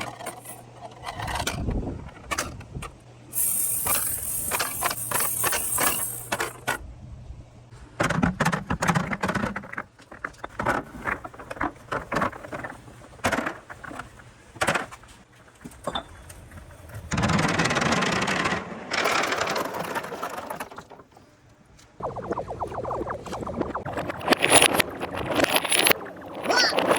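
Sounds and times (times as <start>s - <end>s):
balls clacking on marble run: 0.0s - 1.6s, 3.4s - 6.8s, 17.2s - 21.1s, 22.1s - 26.9s
balls rolling rumble: 3.4s - 6.8s, 8.0s - 21.3s, 21.9s - 26.9s.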